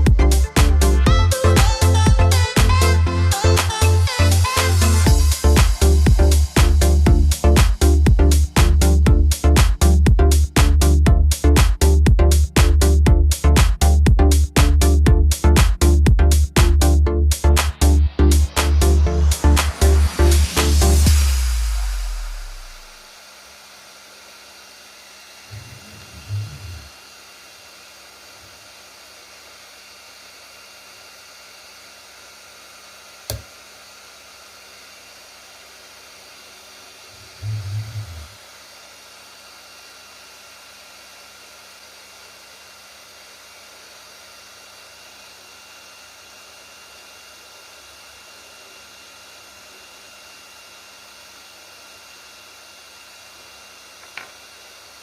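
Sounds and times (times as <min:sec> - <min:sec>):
printer fan hiss with whine: 0:19.3 - 0:55.0.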